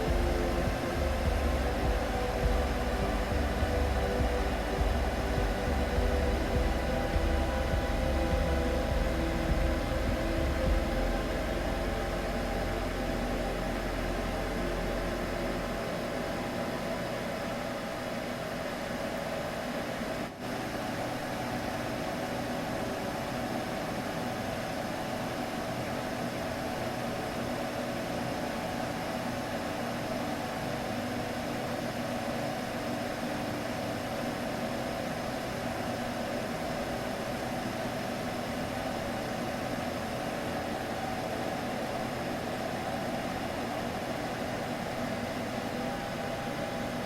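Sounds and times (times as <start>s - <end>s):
deep rumble: 0.0s - 15.7s
machine-like whirring hum: 0.0s - 47.0s.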